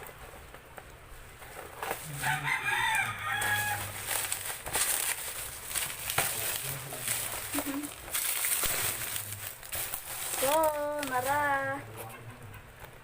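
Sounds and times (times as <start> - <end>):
rustling: 0.0 - 13.0
rooster crowing: 2.1 - 4.5.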